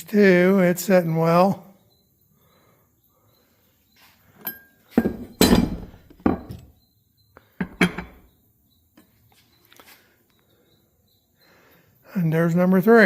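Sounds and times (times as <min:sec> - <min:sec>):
metal mower blades clanking: 0:04.4 - 0:06.6, 0:07.6 - 0:08.2.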